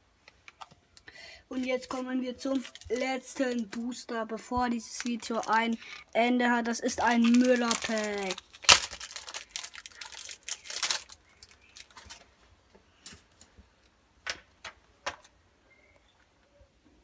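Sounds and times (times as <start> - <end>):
foil pack crinkling: 1.6 - 4.0, 4.7 - 12.3.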